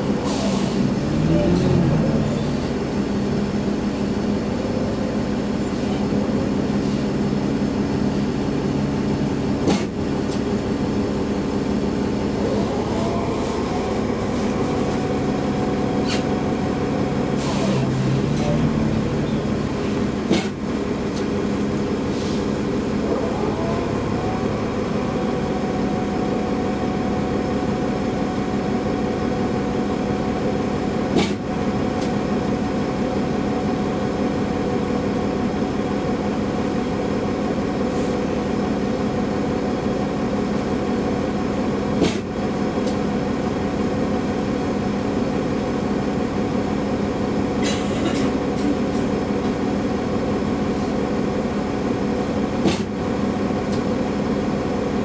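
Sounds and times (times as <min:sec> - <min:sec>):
bus engine humming: 0:00.0 - 0:55.0.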